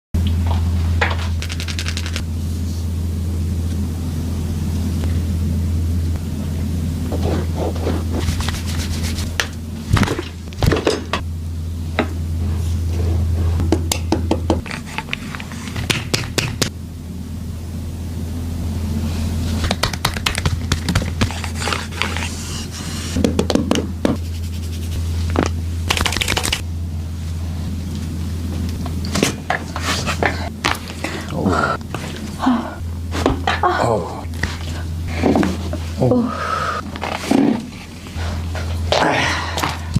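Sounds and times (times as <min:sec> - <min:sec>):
steady low hum: 0:00.2 - 0:39.9
hands rubbing on skin: 0:07.2 - 0:09.5, 0:24.2 - 0:26.6
sharp slaps: 0:19.6 - 0:21.1.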